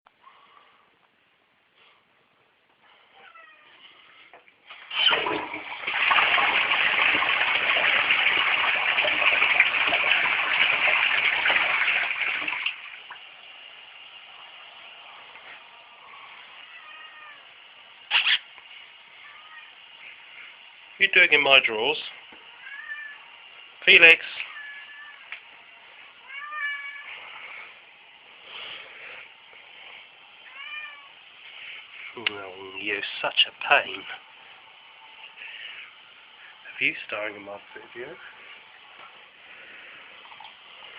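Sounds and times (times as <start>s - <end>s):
cat meowing: 3.1s - 4.0s, 16.5s - 17.5s, 19.2s - 19.8s, 22.5s - 23.3s, 24.4s - 25.4s, 26.2s - 27.2s, 30.4s - 31.2s
toilet flushing: 4.6s - 16.1s, 32.8s - 40.9s.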